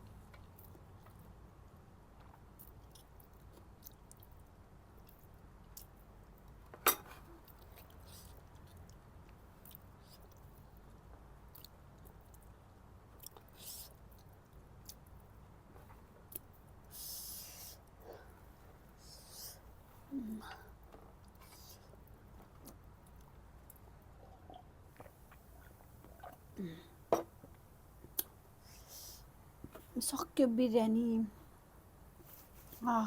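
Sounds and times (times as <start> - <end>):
person chewing food: 2.1 - 6.8, 7.4 - 16.5, 20.5 - 26.5.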